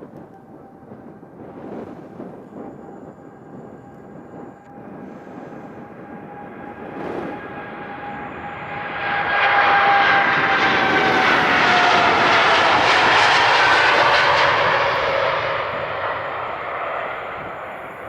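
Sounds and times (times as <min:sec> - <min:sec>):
jet airliner engines at takeoff: 0:00.0 - 0:18.0
jet fan whine dropping in pitch: 0:00.0 - 0:18.0.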